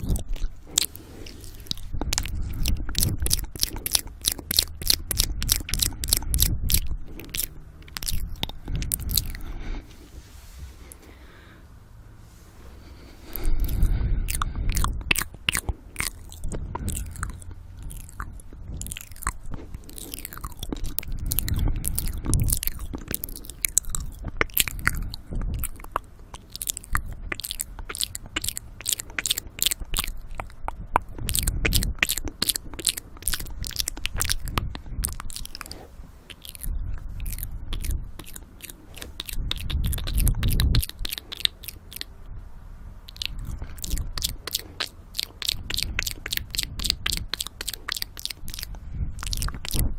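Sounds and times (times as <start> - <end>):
wet lip and tongue clicks: 0.0 - 9.7, 13.0 - 42.2, 43.0 - 49.9
heavy breaths into microphone: 8.7 - 14.9.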